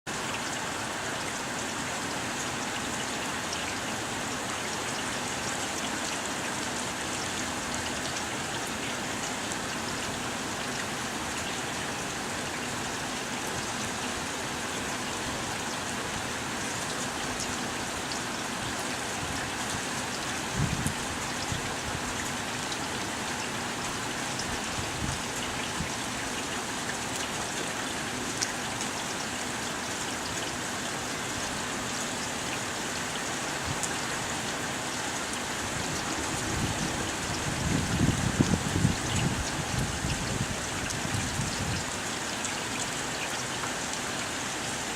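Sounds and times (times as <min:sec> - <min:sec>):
heavy rain pattering: 0:00.1 - 0:44.9.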